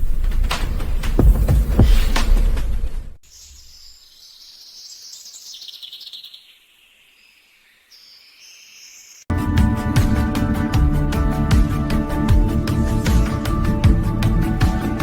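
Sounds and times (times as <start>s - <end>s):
music: 0.0s - 2.6s, 9.3s - 15.0s
faint high-pitched chirping: 3.2s - 9.3s.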